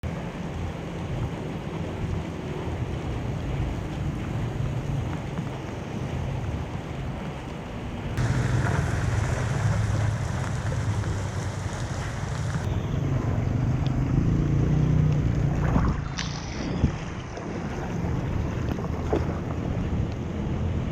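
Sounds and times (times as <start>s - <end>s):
wind rumbling on microphone: 0.1s - 20.9s
floodwater rushing into drain: 8.1s - 12.7s, 15.1s - 20.3s.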